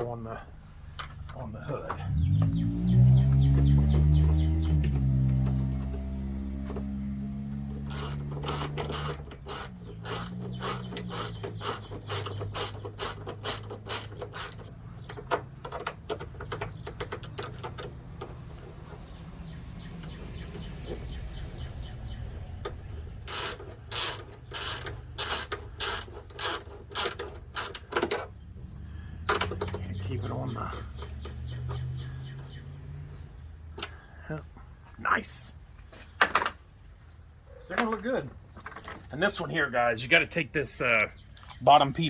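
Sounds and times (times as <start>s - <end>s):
hand ratchet clicking: 7.7s - 18.4s, 23.1s - 28.2s.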